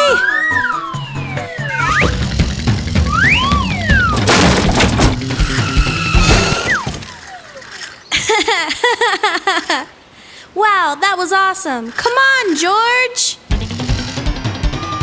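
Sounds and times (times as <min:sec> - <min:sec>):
high chirping voice-like sounds: 0:00.0 - 0:02.1
whistling pitch glide: 0:00.0 - 0:04.3, 0:14.4 - 0:15.0
cartoon background music: 0:00.0 - 0:06.6, 0:13.5 - 0:15.0
crashing shattering noise: 0:02.1 - 0:08.0.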